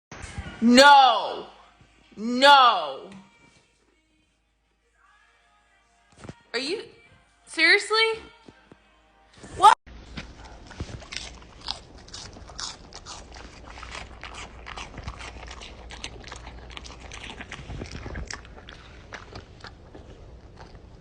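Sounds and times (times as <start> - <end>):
crunchy chewing: 10.2 - 21.0.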